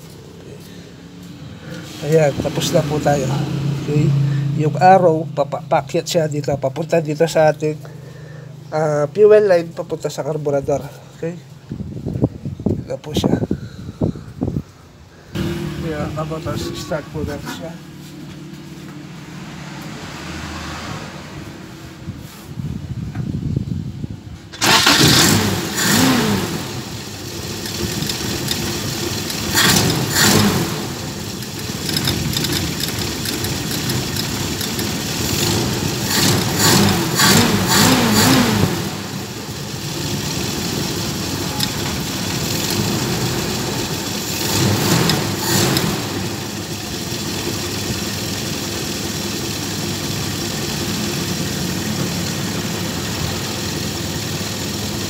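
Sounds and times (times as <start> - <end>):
engine throttle revving: 1.5 - 5.3, 15.3 - 21.8, 24.6 - 55.0
engine starting and idling: 24.5 - 55.0.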